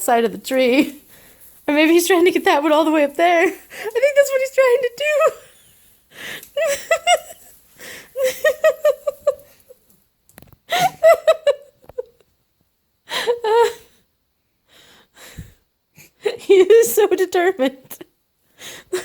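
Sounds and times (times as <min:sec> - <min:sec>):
woman laughing: 0:03.4 - 0:09.8, 0:10.7 - 0:12.2, 0:13.1 - 0:13.9.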